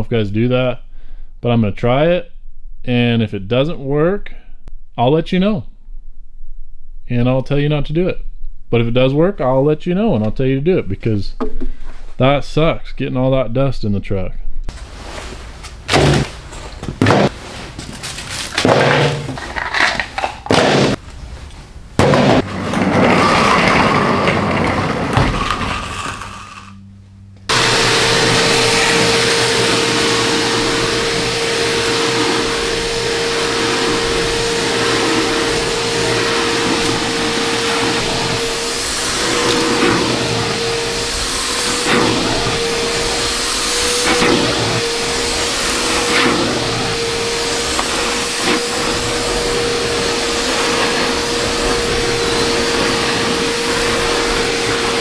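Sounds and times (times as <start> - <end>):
small electric motor whine: 27.5 - 55.0.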